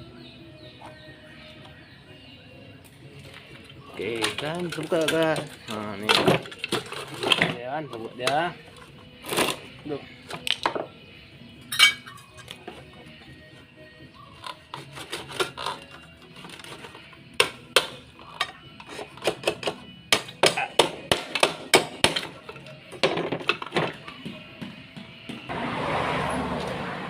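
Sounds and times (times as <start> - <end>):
hand tools knocking on metal parts: 4.0 - 8.9, 14.4 - 25.4.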